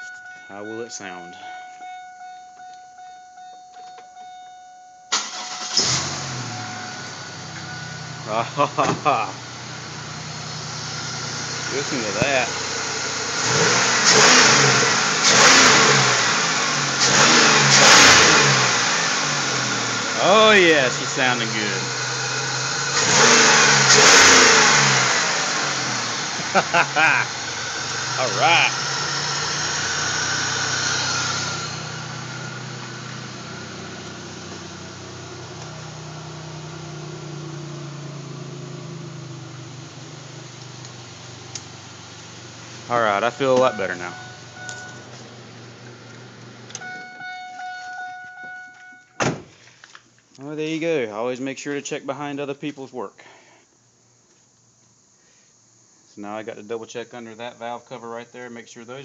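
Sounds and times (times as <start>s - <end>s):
car engine revving: 5.1s - 48.5s.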